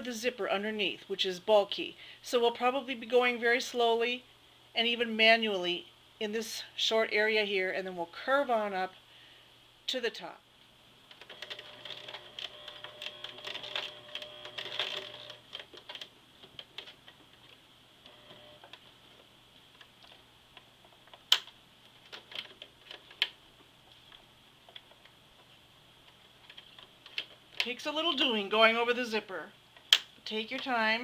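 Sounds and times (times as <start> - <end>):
sewing machine stitching: 11.2 - 15.4.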